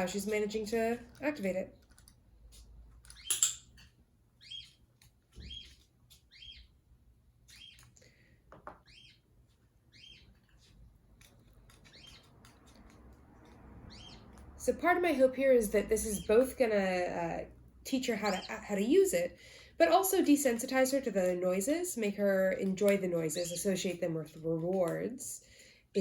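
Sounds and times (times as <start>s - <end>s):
parrot soft chirps: 4.4s - 4.8s, 5.4s - 6.8s, 7.5s - 8.0s, 8.8s - 9.2s, 9.9s - 10.7s, 13.8s - 14.4s.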